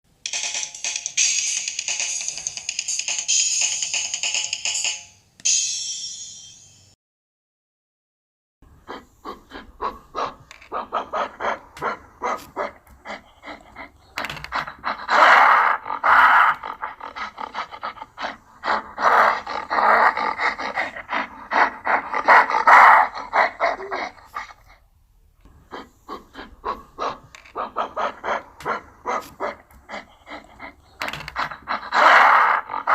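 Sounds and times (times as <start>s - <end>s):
gorilla panting grunts: 8.7s - 32.9s
gorilla rough calls: 8.8s - 24.8s, 25.6s - 32.9s.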